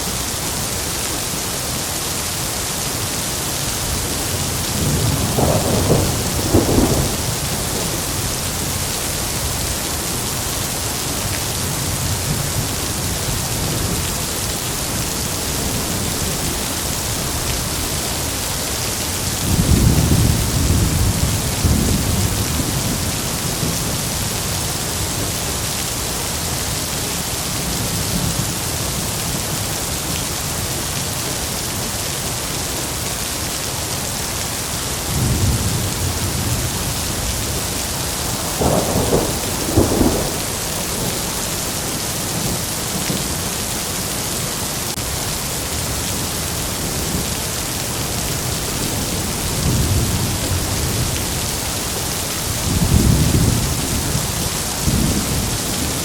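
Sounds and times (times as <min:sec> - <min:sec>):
heavy rain hissing: 0:00.0 - 0:56.0
thunder rumbling: 0:03.9 - 0:09.7, 0:35.1 - 0:43.4.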